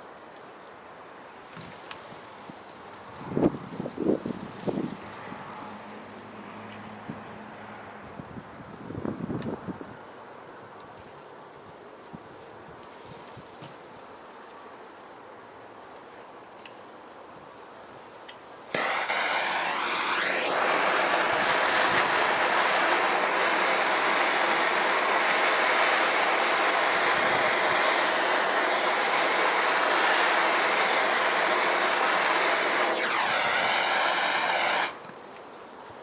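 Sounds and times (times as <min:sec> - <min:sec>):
gas torch flame hissing: 0:18.7 - 0:35.1.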